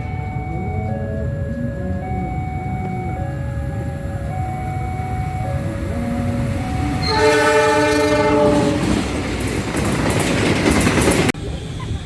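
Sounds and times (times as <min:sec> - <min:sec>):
train passing rumble: 0:00.0 - 0:12.0
wheel clatter on rails: 0:02.8 - 0:11.4
train air horn chord: 0:06.8 - 0:09.1.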